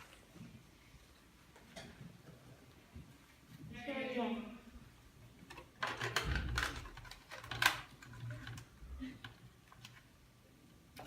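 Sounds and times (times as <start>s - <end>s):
small objects clicking and rustling: 5.5s - 10.1s.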